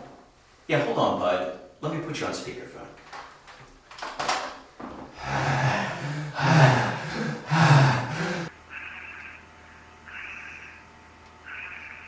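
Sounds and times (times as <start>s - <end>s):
person breathing heavily: 5.2s - 8.5s
voiced groan: 5.2s - 8.5s.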